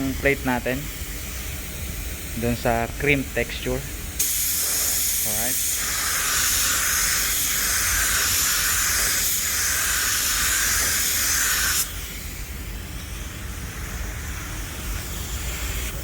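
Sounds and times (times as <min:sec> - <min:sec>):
paint spray gun hissing: 0:04.2 - 0:16.0.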